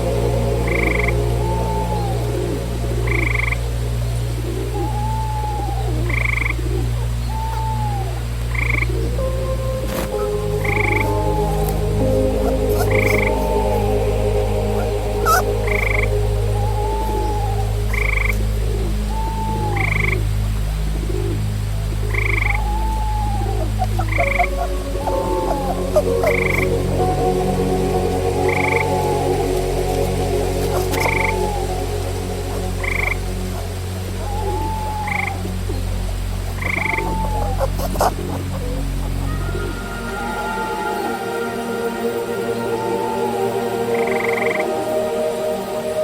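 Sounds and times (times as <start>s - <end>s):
frogs calling: 0.0s - 46.0s
steady low drone: 0.0s - 46.0s.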